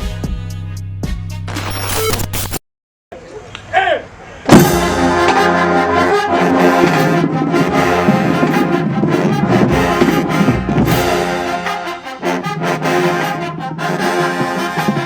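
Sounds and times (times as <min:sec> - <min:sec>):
brass section playing chords: 0:04.6 - 0:15.0.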